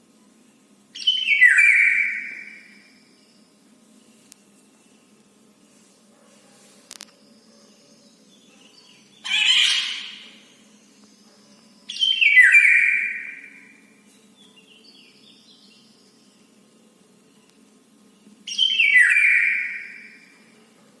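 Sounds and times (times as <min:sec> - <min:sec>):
faint bird calls: 0:08.6 - 0:10.5
bird calling loudly: 0:09.2 - 0:10.4, 0:11.9 - 0:13.6, 0:18.5 - 0:20.2.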